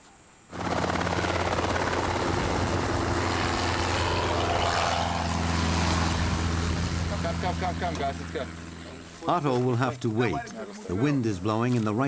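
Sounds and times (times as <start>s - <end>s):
helicopter engine and rotor hum: 0.5s - 10.6s.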